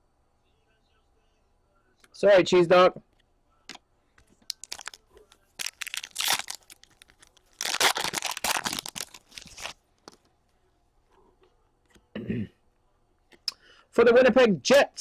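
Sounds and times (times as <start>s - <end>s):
card pack wrappers crinkling: 4.4s - 10.2s.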